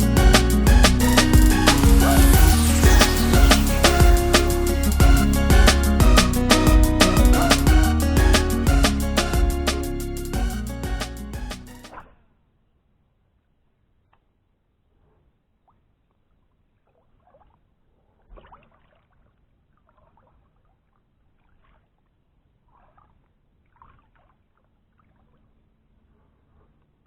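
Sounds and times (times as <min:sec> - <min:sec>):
light water noises: 0:15.7 - 0:26.0.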